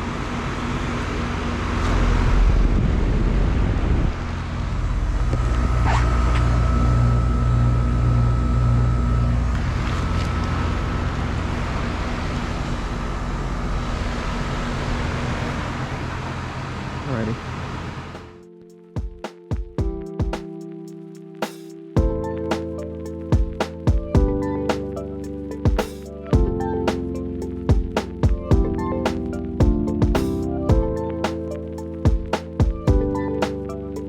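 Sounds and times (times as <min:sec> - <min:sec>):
compressor deep hum: 0:00.1 - 0:18.1.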